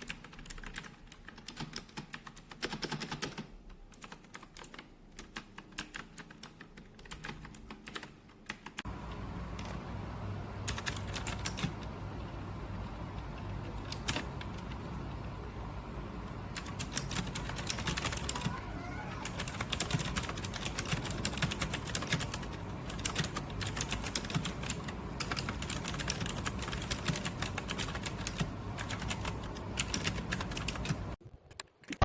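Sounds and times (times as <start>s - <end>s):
clicky keyboard typing: 0.0s - 9.8s, 10.6s - 14.9s, 16.5s - 32.0s
steady low hum: 8.8s - 31.2s.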